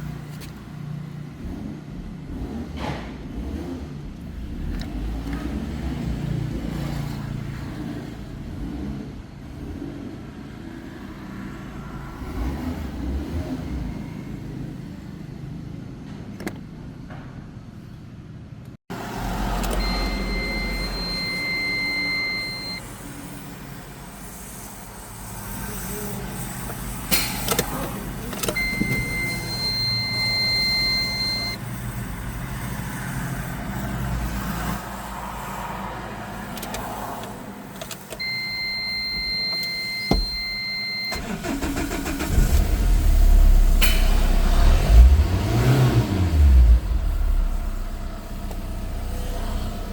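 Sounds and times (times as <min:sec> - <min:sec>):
high-pitched electronic beeps: 0:19.7 - 0:22.8, 0:28.5 - 0:31.6
car engine running: 0:24.2 - 0:35.5, 0:36.4 - 0:49.9.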